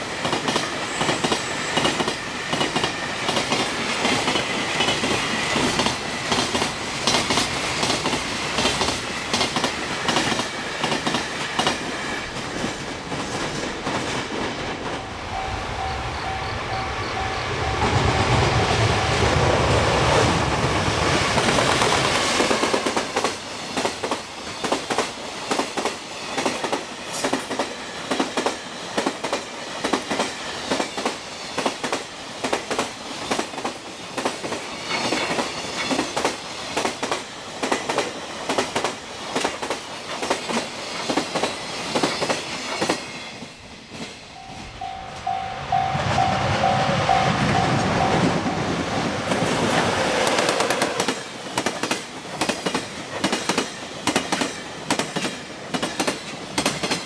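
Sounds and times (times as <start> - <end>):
train rumble: 0.0 - 57.0
level crossing warning bell: 14.9 - 20.2, 44.3 - 49.4.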